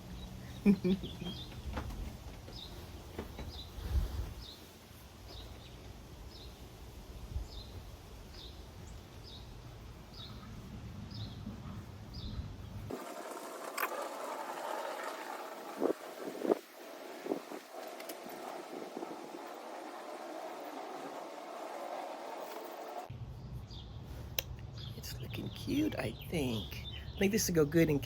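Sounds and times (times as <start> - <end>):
bird chirping: 0.0 - 1.7, 23.3 - 28.0
bright rushing noise: 12.9 - 23.1.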